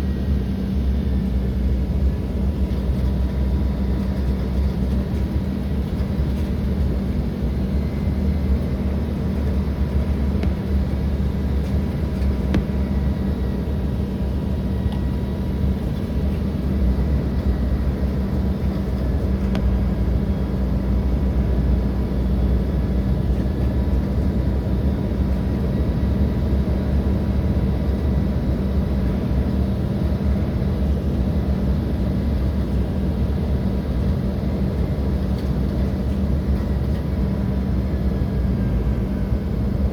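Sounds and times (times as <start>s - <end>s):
jet engine drone: 0.0s - 39.9s.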